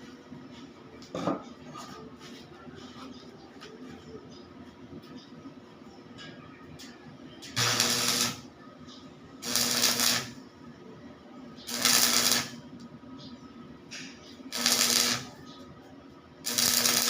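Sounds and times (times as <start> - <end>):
steady hum: 0.0 - 17.0
arc welding hiss: 7.6 - 8.4, 9.4 - 10.4, 11.7 - 12.6, 14.5 - 15.3, 16.5 - 17.0.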